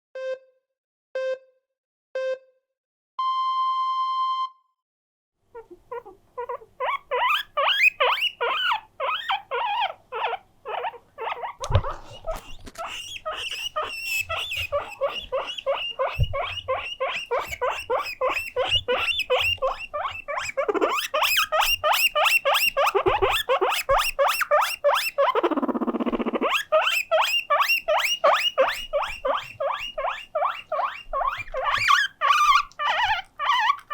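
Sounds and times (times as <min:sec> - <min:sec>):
guinea pig wheeking: 0:05.5 - 0:33.9
soft thumps: 0:14.3 - 0:17.7.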